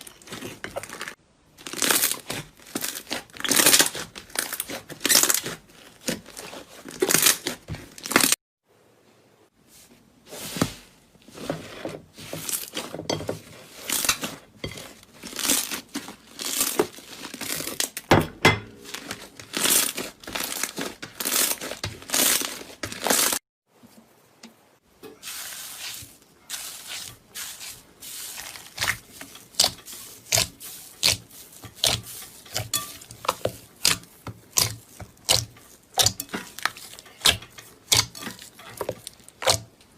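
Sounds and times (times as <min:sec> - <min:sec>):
slime crackling and popping: 0:00.0 - 0:08.4, 0:28.4 - 0:39.7.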